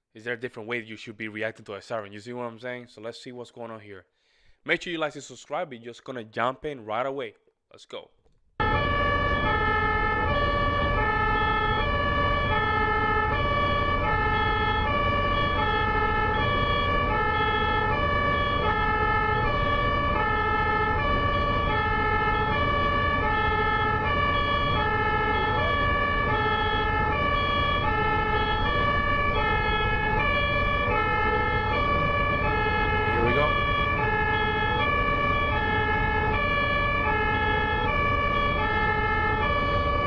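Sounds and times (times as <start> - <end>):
two-tone ambulance siren: 8.6 - 40.0.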